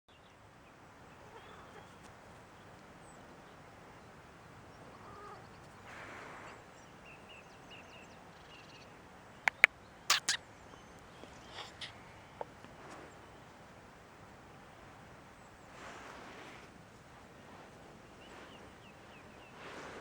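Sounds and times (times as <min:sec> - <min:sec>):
faint small birds chirping: 0:00.1 - 0:16.0, 0:16.9 - 0:20.0
sharp clicks: 0:09.5 - 0:10.4.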